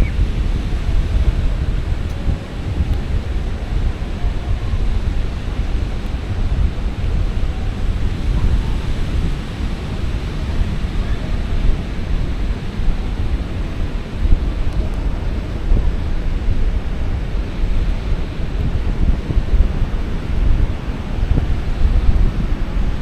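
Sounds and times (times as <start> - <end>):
ocean surf washing on beach: 0.0 - 23.0
wind buffeting microphone: 0.0 - 23.0.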